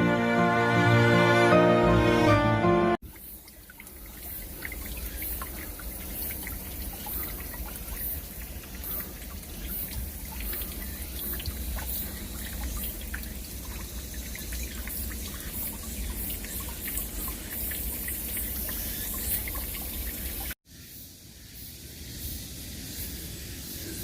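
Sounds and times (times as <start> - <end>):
stream splashing over rocks: 3.0 - 20.6
water drips and splashes: 3.0 - 20.6.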